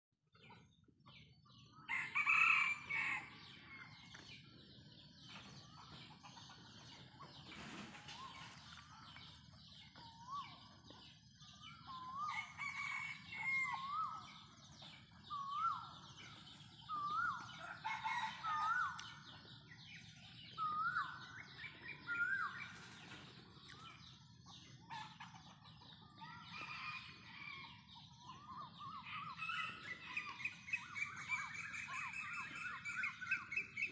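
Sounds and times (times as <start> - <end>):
rooster crowing: 1.9 - 3.4, 17.3 - 19.0
chickens clucking: 2.9 - 31.6
birds calling: 11.4 - 27.6.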